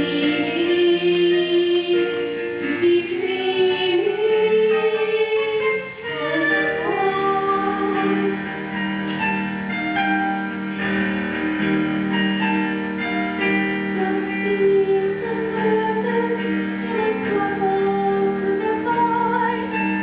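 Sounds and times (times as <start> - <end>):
woman singing: 0.0 - 8.6, 13.8 - 20.0
piano accompaniment: 0.0 - 20.0.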